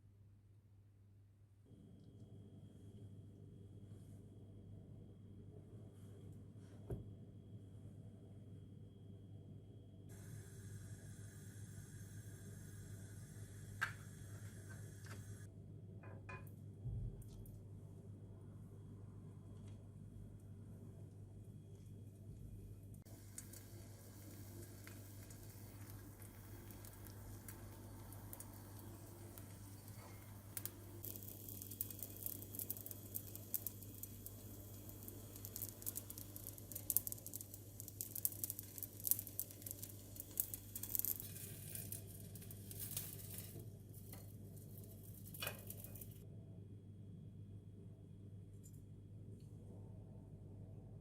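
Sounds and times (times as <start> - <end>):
steady low hum: 0.0 - 51.0
food sizzling in a frying pan: 10.1 - 15.5, 23.1 - 46.2.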